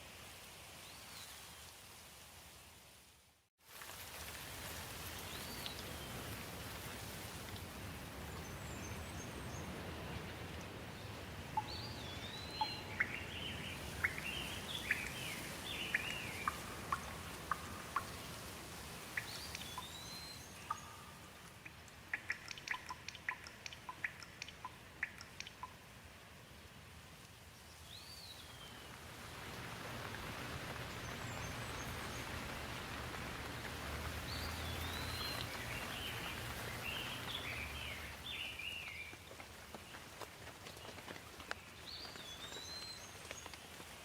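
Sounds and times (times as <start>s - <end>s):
steady rain falling: 0.0s - 44.0s
bird chirping: 11.6s - 18.4s, 19.2s - 25.8s, 34.3s - 39.1s
sharp ticks: 20.7s - 25.8s.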